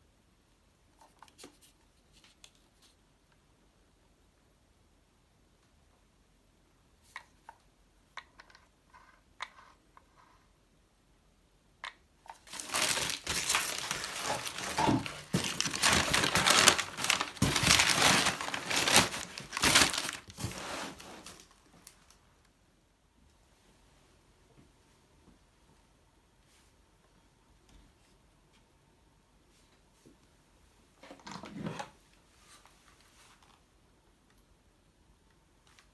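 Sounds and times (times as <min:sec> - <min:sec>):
packing material crinkling: 0:12.3 - 0:22.1.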